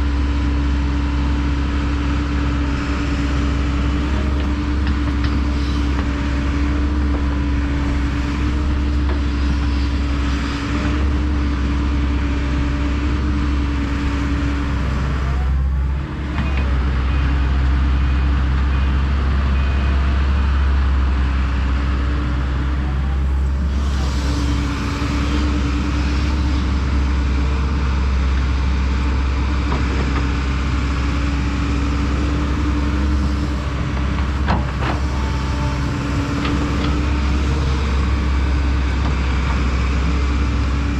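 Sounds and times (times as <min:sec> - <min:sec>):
diesel engine droning: 0:00.0 - 0:40.9.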